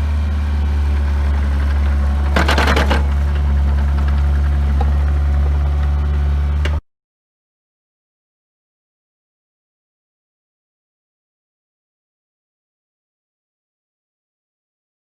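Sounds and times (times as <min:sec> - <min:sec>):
diesel excavator engine running: 0:00.0 - 0:06.8
clattering rattle: 0:01.7 - 0:05.2.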